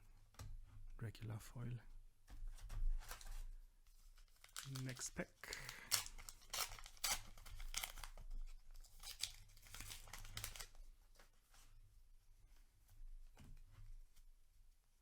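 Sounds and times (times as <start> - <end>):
paper wrapper tearing and crinkling: 4.2 - 10.8.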